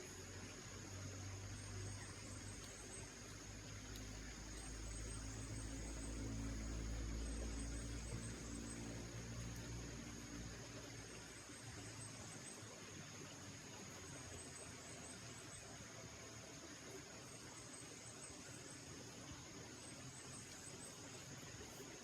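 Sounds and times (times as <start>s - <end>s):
low engine hum: 0.0s - 12.8s
short insect chirps: 0.0s - 22.0s.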